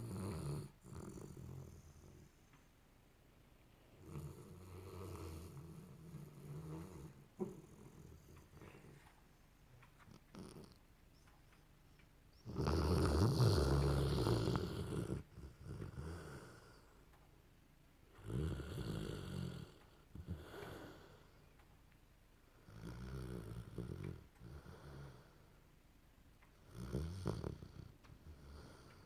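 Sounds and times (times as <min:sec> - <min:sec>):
dog snoring: 0:00.0 - 0:02.3, 0:04.0 - 0:09.1, 0:10.0 - 0:10.8, 0:12.4 - 0:17.0, 0:18.2 - 0:21.2, 0:22.6 - 0:25.4, 0:26.6 - 0:29.0.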